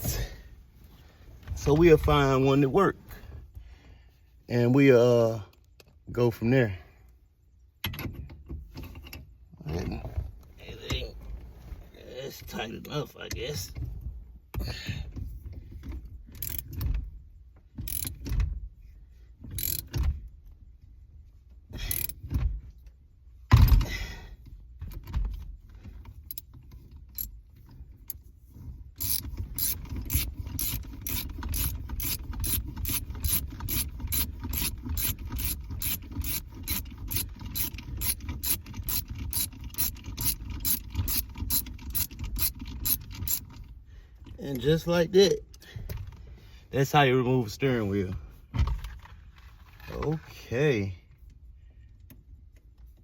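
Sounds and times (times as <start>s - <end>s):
socket ratchet clicking: 16.4s - 16.8s, 17.8s - 18.3s, 19.5s - 20.0s, 21.9s - 22.2s, 29.0s - 43.6s.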